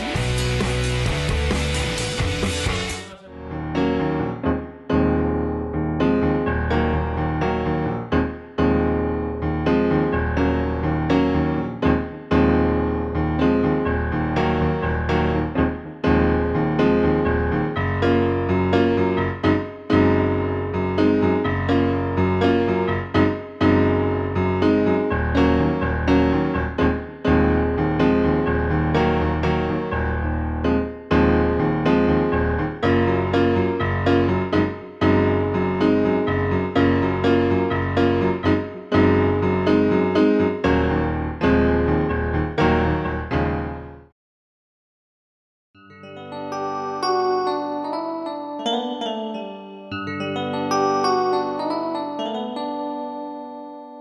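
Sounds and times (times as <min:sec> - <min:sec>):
piano chords over bass notes: 0:00.0 - 0:44.1, 0:46.1 - 0:54.0.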